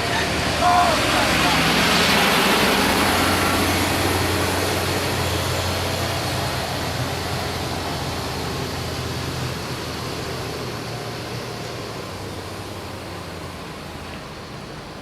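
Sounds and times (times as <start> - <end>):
bus engine drone: 0.0 - 15.0
road noise: 0.0 - 15.0.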